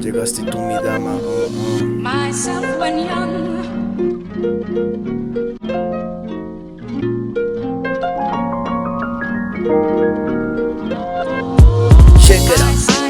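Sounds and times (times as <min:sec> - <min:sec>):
harp-like plucked-string melody: 0:00.0 - 0:12.5.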